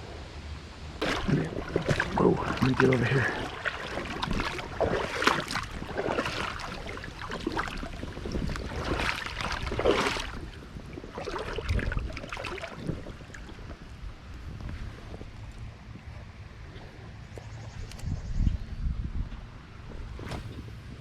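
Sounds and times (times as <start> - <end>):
water sloshing and splashing: 1.0 - 15.3
wind buffeting microphone: 1.0 - 21.0.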